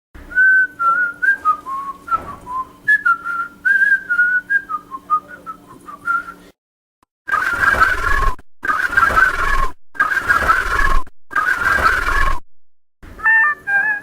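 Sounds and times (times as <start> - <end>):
person whistling a tune: 0.3 - 6.4, 13.2 - 14.0.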